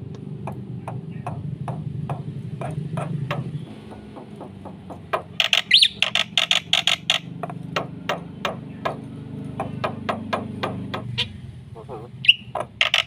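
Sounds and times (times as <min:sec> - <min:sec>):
bird sharp clicking notes: 0:00.0 - 0:11.3, 0:12.3 - 0:13.0
bird harsh chattering: 0:02.6 - 0:09.0, 0:09.6 - 0:13.0.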